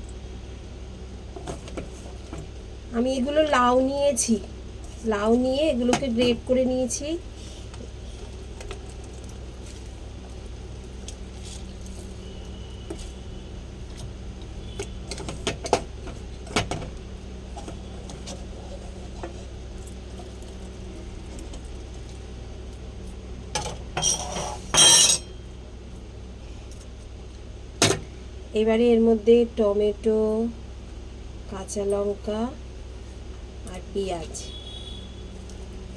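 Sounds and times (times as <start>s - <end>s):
low background hum: 0.0s - 35.9s
bowls and utensils clinking: 23.6s - 25.4s
utensils clattering: 24.0s - 25.3s.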